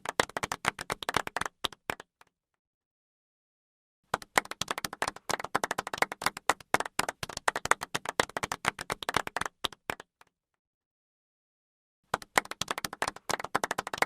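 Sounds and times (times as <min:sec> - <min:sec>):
crowd clapping politely: 0:00.0 - 0:02.1, 0:04.1 - 0:10.2, 0:12.1 - 0:14.0.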